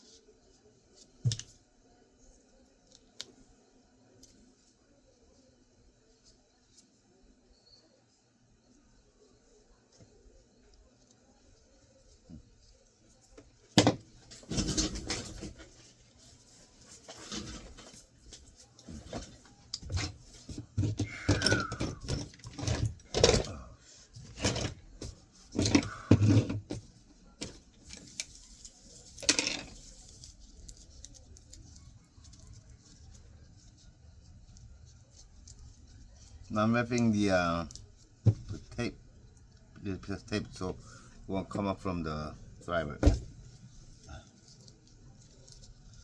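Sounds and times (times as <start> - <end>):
hard drive parts knocking: 13.8 - 15.6.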